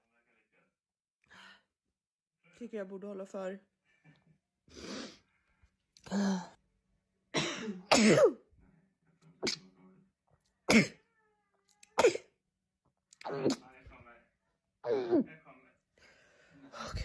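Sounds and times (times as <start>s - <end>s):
person sneezing: 7.4s - 8.4s, 10.7s - 11.0s, 12.0s - 12.3s, 13.2s - 13.6s.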